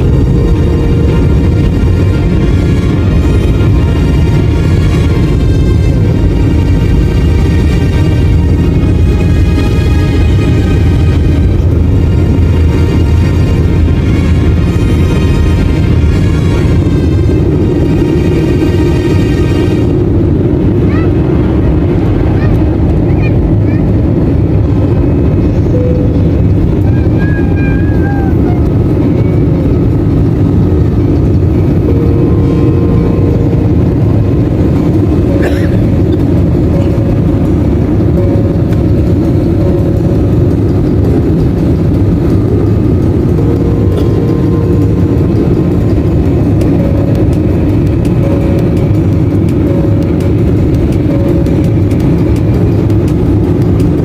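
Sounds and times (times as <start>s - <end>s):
jet engine rumble in cabin: 0.0s - 54.0s.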